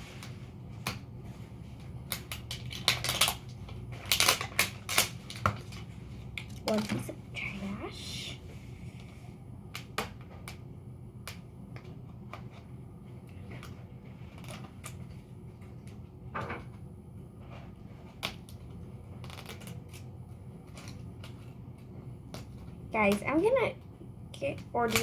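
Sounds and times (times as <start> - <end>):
plastic packaging crinkling: 2.1 - 7.2.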